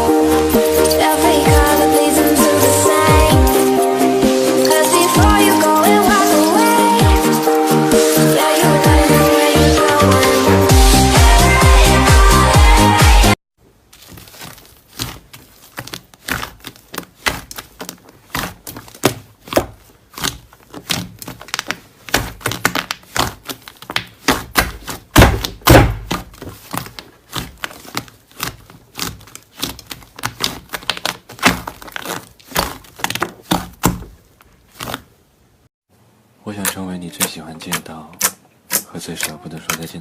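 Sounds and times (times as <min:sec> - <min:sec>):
slime squeezed sticky pops: 0:14.2 - 0:35.0.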